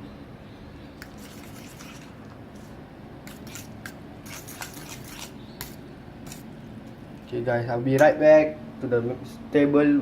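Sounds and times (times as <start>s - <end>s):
steady low hum: 0.0s - 10.0s
utensil clicks and scrapes: 1.0s - 6.5s
wet squishing of noodles: 1.0s - 6.5s.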